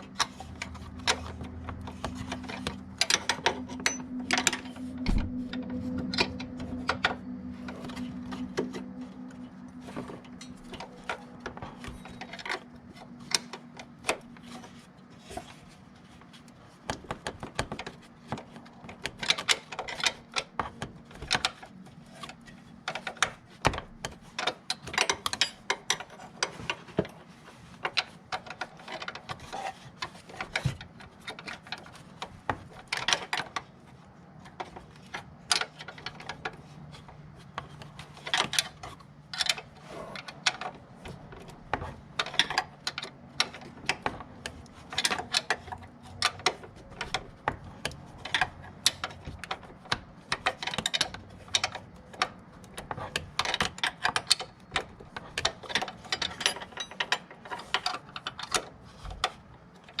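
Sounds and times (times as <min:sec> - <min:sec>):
hand tools clicking and clattering: 0:00.0 - 0:15.5, 0:34.5 - 1:00.0
faint low hum: 0:00.0 - 0:16.3.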